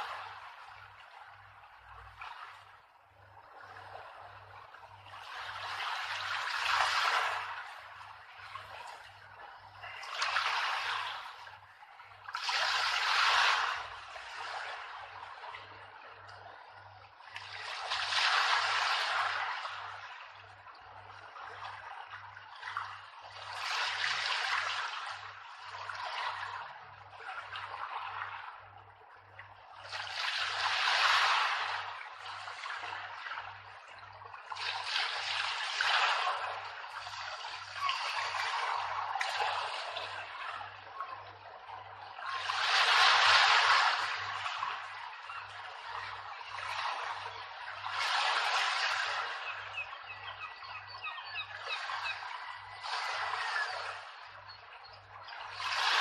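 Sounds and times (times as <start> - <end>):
rushing water-like noise: 0.0 - 0.6.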